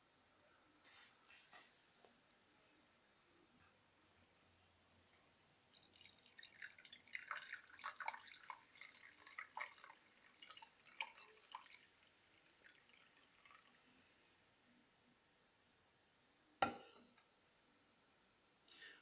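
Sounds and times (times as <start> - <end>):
moka pot coffee trickling: 4.9 - 14.2.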